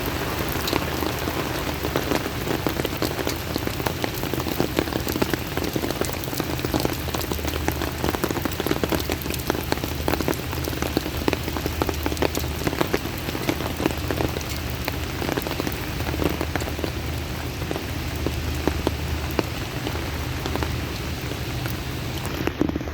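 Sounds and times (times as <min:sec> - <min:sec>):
heavy rain pouring: 0:00.0 - 0:22.9.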